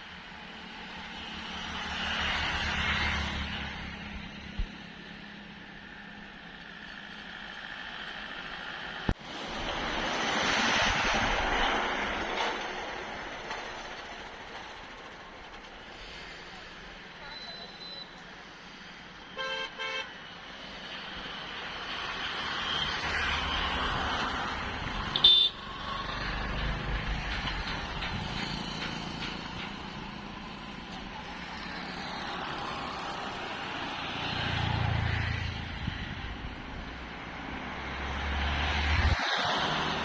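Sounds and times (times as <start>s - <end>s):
road traffic passing: 0.0s - 40.0s
car horn beeping: 19.4s - 20.1s, 25.1s - 25.6s
high horn toot: 19.4s - 20.1s, 25.1s - 25.6s.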